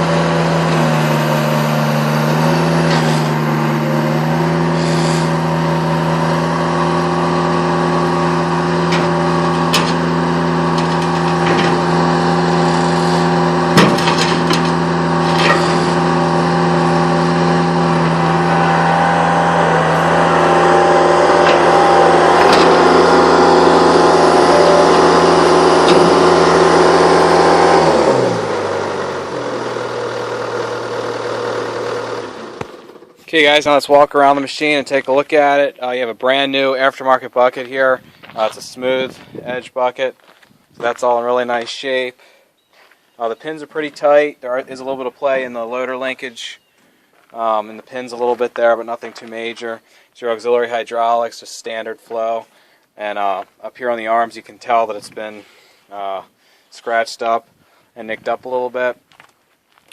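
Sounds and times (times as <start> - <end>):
diesel engine running: 0.0 - 37.2
metal knocks and clanks: 8.8 - 12.0, 13.0 - 16.0.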